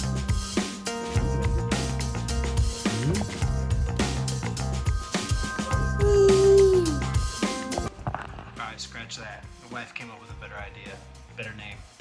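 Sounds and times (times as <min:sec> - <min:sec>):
music with beat bass and drums: 0:00.0 - 0:08.6.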